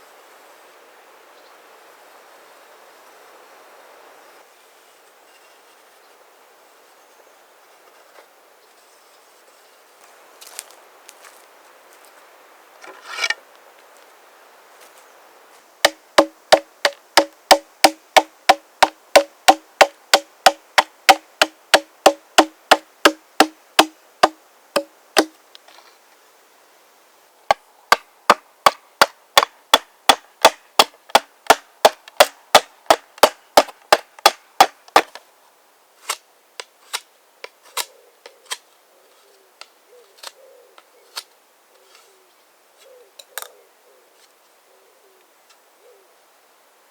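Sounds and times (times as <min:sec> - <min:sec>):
axe chopping wood: 0:15.8 - 0:25.4, 0:27.9 - 0:35.2.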